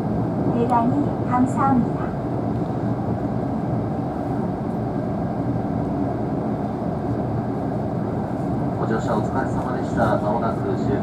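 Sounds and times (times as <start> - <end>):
train rumbling on rails: 0.0 - 11.0.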